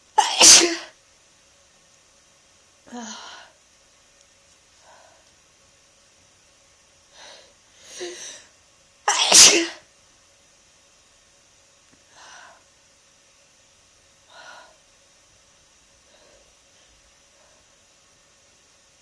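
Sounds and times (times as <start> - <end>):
person sneezing: 0.2 - 0.9, 9.1 - 9.8.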